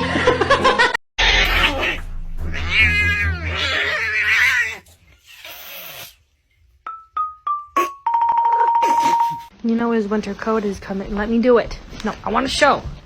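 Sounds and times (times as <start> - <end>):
cat yowling: 1.2 - 6.2
bell-like tones: 6.9 - 9.5.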